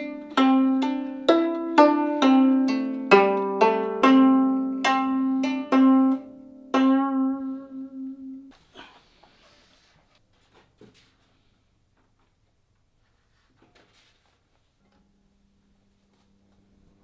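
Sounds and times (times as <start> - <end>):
plucked zither notes: 0.0 - 8.5
faint soft rustle: 8.5 - 14.9.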